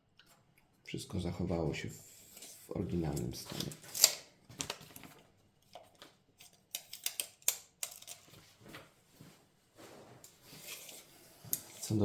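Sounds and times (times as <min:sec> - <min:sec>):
objects clicking and knocking: 0:03.2 - 0:08.4
soft rustling: 0:08.4 - 0:12.0.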